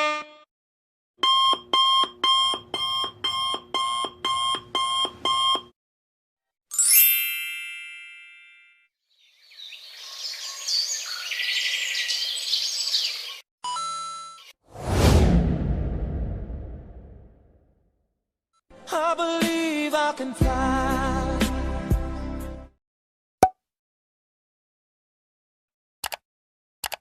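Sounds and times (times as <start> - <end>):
electronic alarm beeps: 1.2 - 5.7
ringing chime: 6.7 - 8.9.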